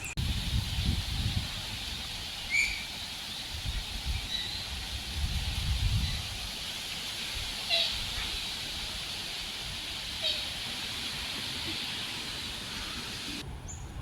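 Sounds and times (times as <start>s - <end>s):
steady high hiss: 0.2s - 13.4s
bird chirps: 2.5s - 2.9s.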